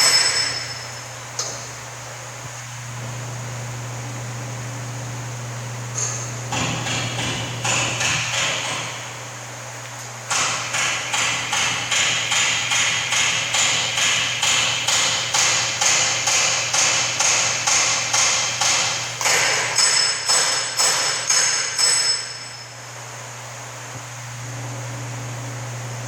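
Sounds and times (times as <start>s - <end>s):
welding machine hum: 0.0s - 26.0s
welding arc pulsing: 1.4s - 9.2s, 10.3s - 19.8s.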